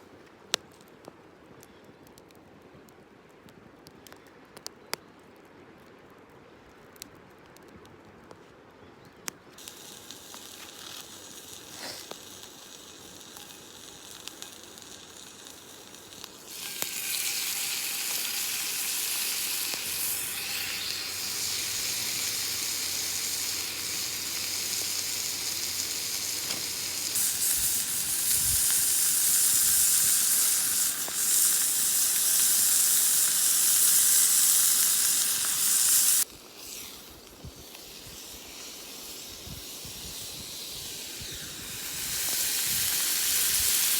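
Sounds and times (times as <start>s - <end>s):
food sizzling in a skillet: 9.6s - 43.9s.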